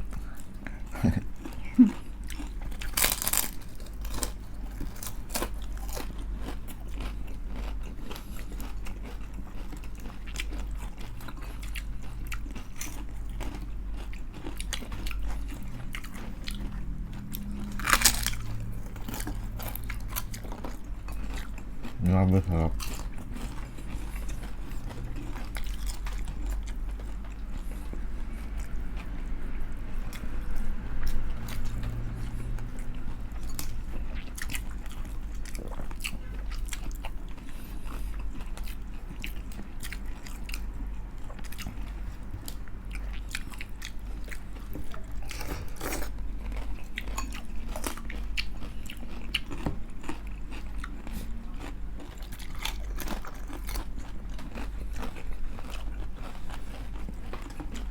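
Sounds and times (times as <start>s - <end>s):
low steady hum: 0.0s - 57.9s
crunching crispy chicken skin: 2.4s - 8.2s, 17.7s - 20.3s.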